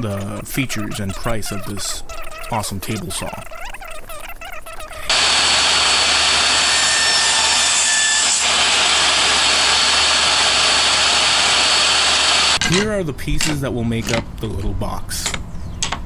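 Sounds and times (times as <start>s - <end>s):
table saw ripping wood: 5.1s - 12.6s.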